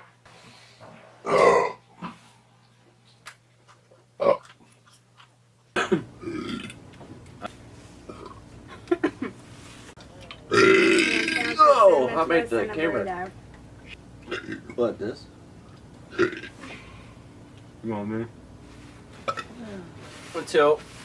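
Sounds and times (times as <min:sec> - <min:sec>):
person burping: 0:01.2 - 0:01.8, 0:04.2 - 0:04.5, 0:05.8 - 0:06.8, 0:10.5 - 0:11.6, 0:14.2 - 0:14.7, 0:16.1 - 0:16.6.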